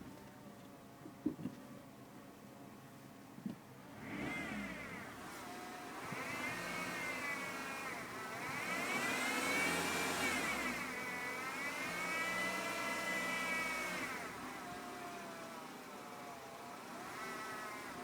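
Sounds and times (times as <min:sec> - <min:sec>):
car whine while driving: 0:03.9 - 0:18.0.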